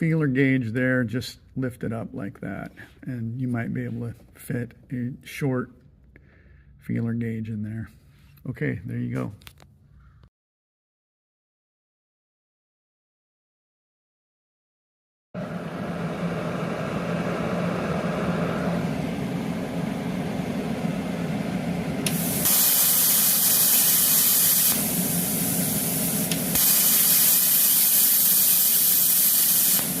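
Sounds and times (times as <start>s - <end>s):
machine humming: 15.4s - 30.0s
plasma torch click: 22.0s - 30.0s
plasma torch hissing and whining: 22.0s - 30.0s.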